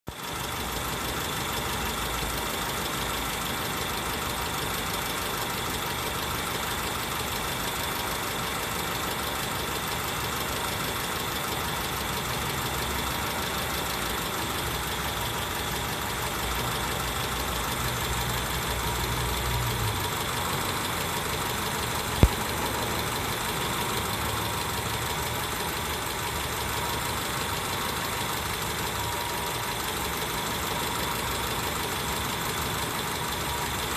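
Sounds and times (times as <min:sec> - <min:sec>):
car engine idling: 0:00.1 - 0:33.9
sharp click: 0:22.2 - 0:22.6.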